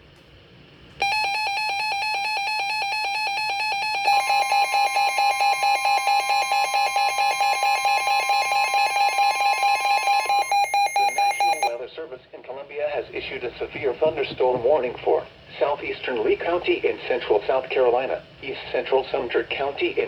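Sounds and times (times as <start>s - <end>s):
rapidly pulsing electronic beep: 1.0s - 11.8s
steady higher tone: 1.0s - 11.8s.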